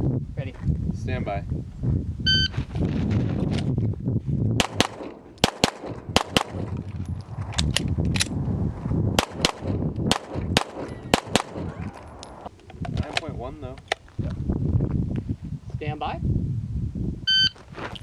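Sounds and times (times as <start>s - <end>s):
pistol shots in quick pairs: 4.6s - 6.7s, 9.2s - 11.8s.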